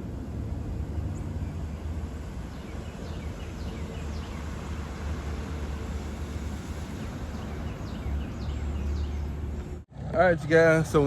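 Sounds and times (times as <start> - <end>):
birds chirping: 0.8 - 9.8.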